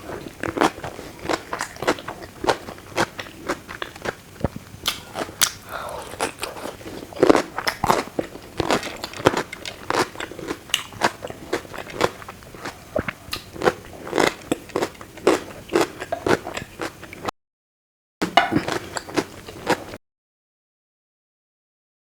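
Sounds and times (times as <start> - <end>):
wet chewing: 0.0 - 17.3
crisp crunching bites: 4.8 - 12.2.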